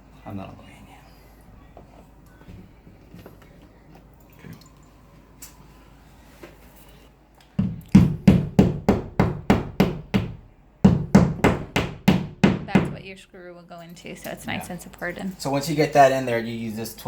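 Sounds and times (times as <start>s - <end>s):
hammer blows on wall anchor: 7.6s - 13.1s.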